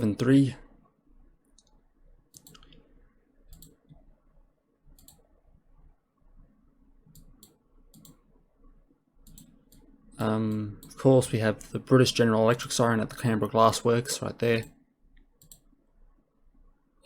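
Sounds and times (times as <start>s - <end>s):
computer mouse clicks: 1.5s - 2.8s, 3.5s - 4.0s, 4.9s - 5.3s, 7.1s - 8.3s, 9.2s - 9.9s, 14.6s - 15.7s.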